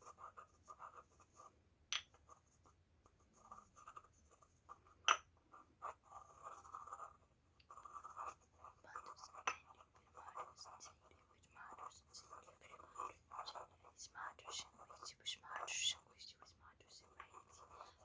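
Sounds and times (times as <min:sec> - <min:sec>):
scratching and rubbing: 0:05.6 - 0:18.0.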